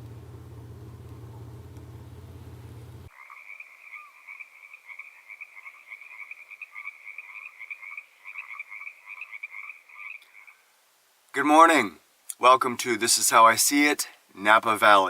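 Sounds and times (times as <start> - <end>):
low vehicle rumble: 0.0 - 3.1
frogs trilling: 3.1 - 10.7.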